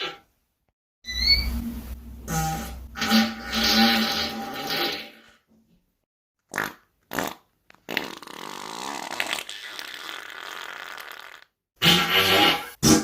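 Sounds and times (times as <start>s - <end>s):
person farting: 6.5s - 13.0s.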